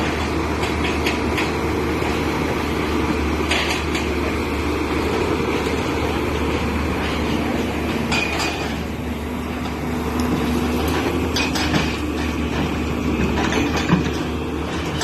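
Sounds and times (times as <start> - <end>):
excavator engine droning: 0.0 - 15.0.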